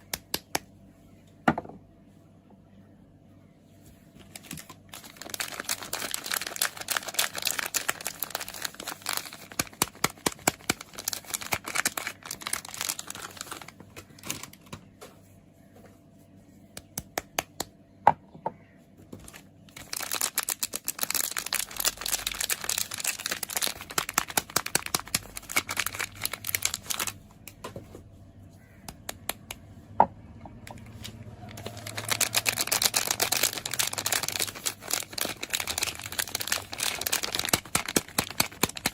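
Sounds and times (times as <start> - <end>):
soap packaging crinkling: 4.2 - 14.8, 19.2 - 27.2, 30.7 - 38.9.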